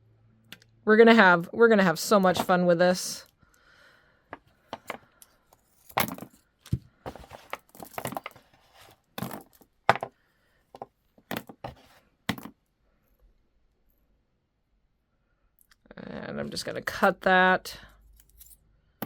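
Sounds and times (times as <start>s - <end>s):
rustling: 7.0s - 9.7s.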